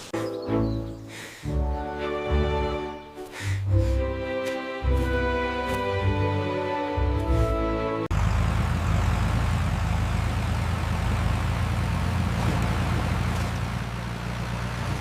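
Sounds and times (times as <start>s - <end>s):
music: 0.0s - 8.1s
tractor engine droning: 7.0s - 15.0s.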